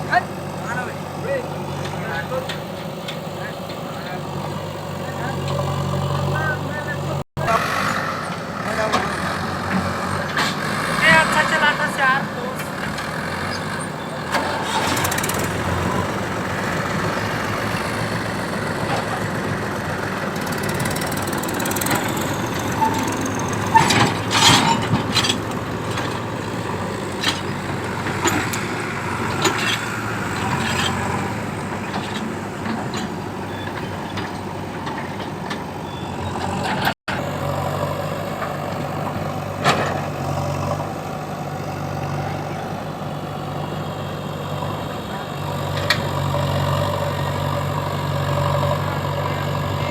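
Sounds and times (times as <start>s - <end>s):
heavy diesel machinery running: 0.0s - 49.9s
sharp metal knocks and clanks: 20.4s - 26.3s.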